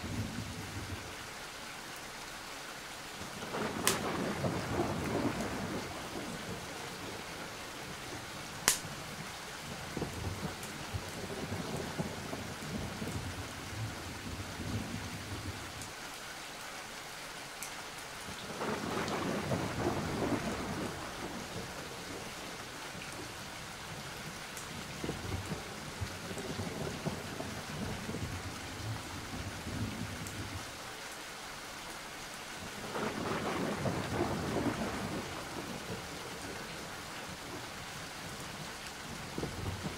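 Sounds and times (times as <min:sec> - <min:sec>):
steady rain: 0:00.0 - 0:39.9
rolling thunder: 0:03.4 - 0:07.4, 0:09.7 - 0:15.6, 0:18.4 - 0:23.3, 0:24.8 - 0:30.6, 0:32.8 - 0:36.7
sharp crack: 0:03.8 - 0:04.1, 0:08.6 - 0:08.9.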